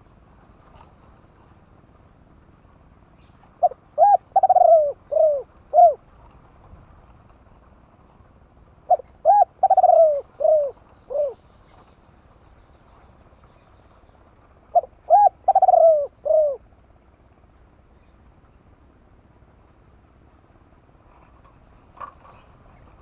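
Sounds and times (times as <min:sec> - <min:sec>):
dove cooing: 0:03.4 - 0:06.1, 0:08.8 - 0:11.8, 0:14.7 - 0:16.7.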